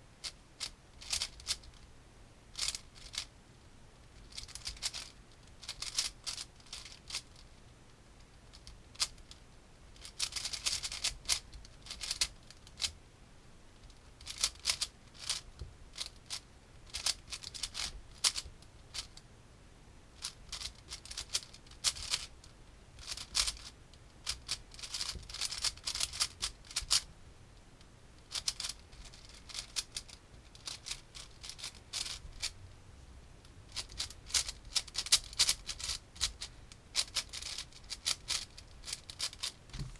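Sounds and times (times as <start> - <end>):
puzzle cube clicking turns: 0.2 - 1.7, 2.6 - 3.3, 4.2 - 7.4, 8.5 - 9.4, 10.0 - 12.9, 13.8 - 19.1, 20.2 - 22.3, 23.0 - 27.1, 28.3 - 32.5, 33.7 - 39.9.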